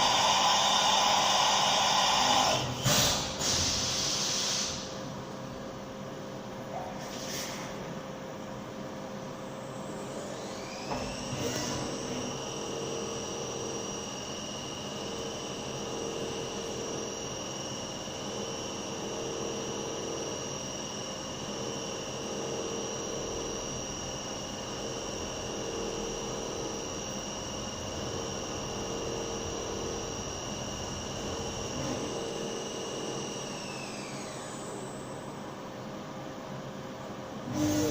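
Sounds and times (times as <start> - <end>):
cnc spindle high whine: 0.0 - 37.9.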